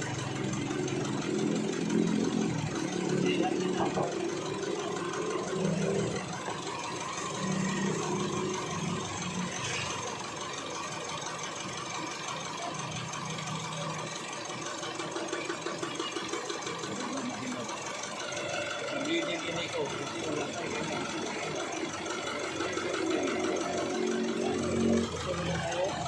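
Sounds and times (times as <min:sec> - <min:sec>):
diesel engine idling: 0:00.0 - 0:26.0.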